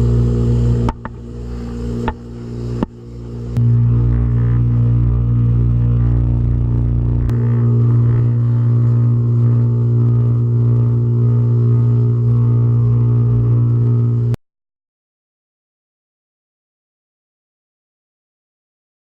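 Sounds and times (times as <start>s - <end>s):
low rumble: 0.0s - 14.4s
pressure washer motor hum: 0.0s - 14.4s.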